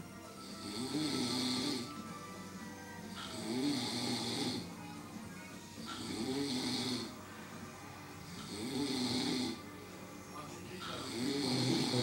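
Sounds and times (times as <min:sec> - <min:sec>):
person snoring: 0:00.3 - 0:02.2, 0:03.0 - 0:04.8, 0:05.8 - 0:07.3, 0:08.2 - 0:09.8, 0:10.8 - 0:12.0.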